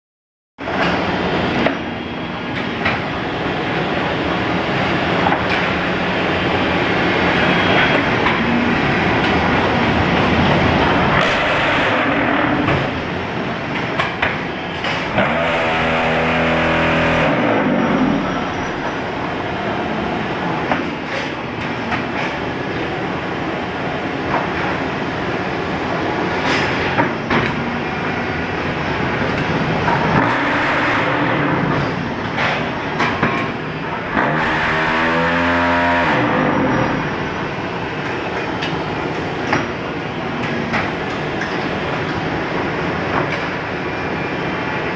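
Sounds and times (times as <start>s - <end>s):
machinery noise: 0.6s - 44.9s
loud vibration motor hum: 15.0s - 18.6s, 33.9s - 37.6s.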